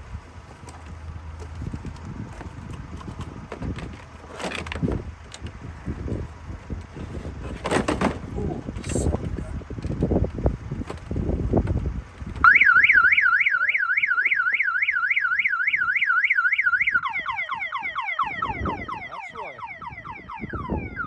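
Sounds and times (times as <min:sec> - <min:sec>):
car alarm rapid chirps: 0:12.4 - 0:21.0
car alarm siren warbling: 0:12.4 - 0:21.0.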